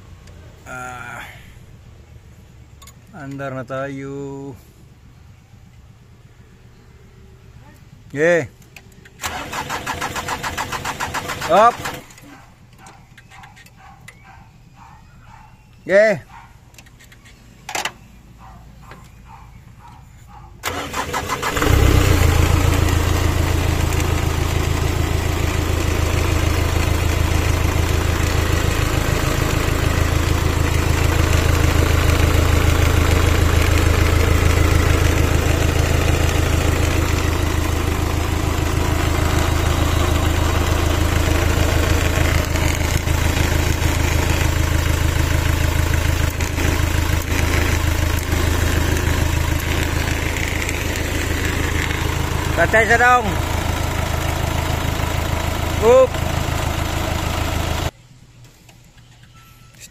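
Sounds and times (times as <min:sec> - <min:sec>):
engine cranking and idling: 0:08.7 - 0:13.7, 0:20.6 - 0:57.9.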